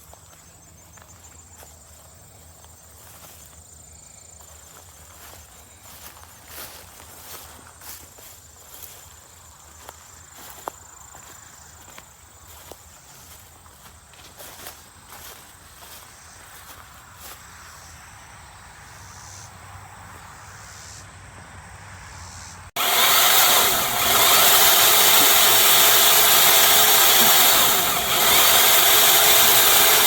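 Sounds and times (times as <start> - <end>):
electric chainsaw running: 22.8 - 30.0.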